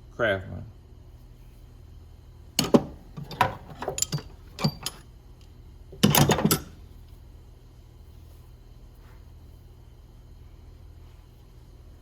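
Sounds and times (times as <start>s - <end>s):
metal hand tools clinking: 2.6s - 5.0s.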